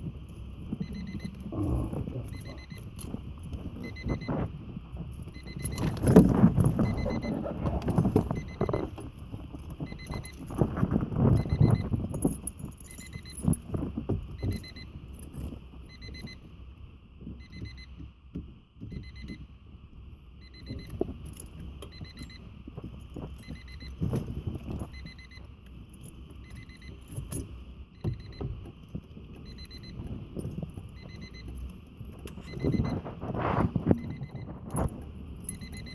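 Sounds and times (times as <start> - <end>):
keys jangling: 0.2 - 4.2, 5.1 - 11.5, 12.1 - 14.0, 25.9 - 27.6, 33.7 - 35.9
car warning chime beeping: 0.3 - 10.7, 11.3 - 13.6, 14.3 - 16.6, 17.4 - 18.1, 18.9 - 19.6, 20.4 - 24.2, 24.8 - 35.9.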